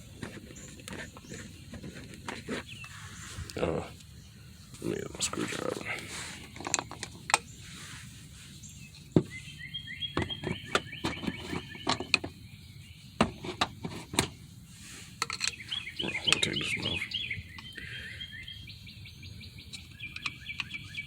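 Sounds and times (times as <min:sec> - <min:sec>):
bird chirping: 0:00.0 - 0:14.6, 0:15.2 - 0:21.0
hand tools clicking on parts: 0:15.2 - 0:15.6.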